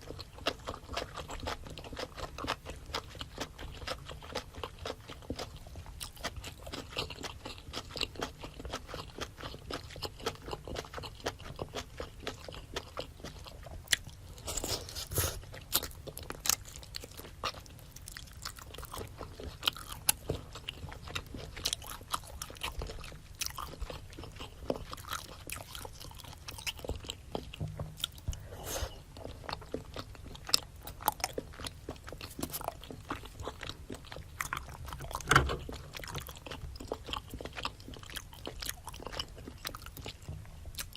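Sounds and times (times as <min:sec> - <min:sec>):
chewing and crunching: 0:00.0 - 0:40.9.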